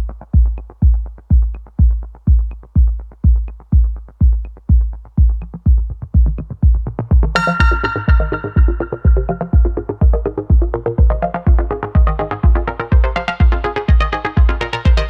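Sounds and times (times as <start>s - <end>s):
deep kick drum beat: 0.0s - 15.0s
bright synth chord: 7.4s - 10.2s.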